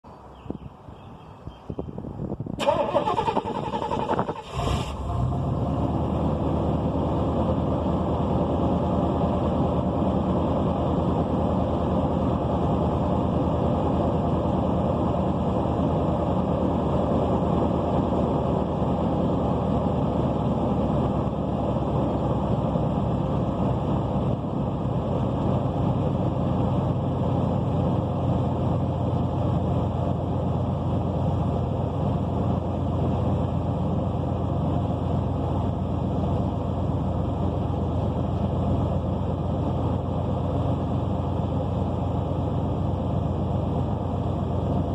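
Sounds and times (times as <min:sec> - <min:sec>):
car engine cranking: 0:02.6 - 0:05.5
car engine idling: 0:02.6 - 0:44.9.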